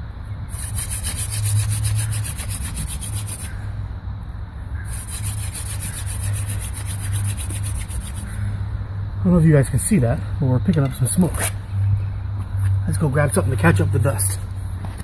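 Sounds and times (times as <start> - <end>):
wooden spindle rubbing hearth board: 0.5 - 3.6, 4.9 - 8.4.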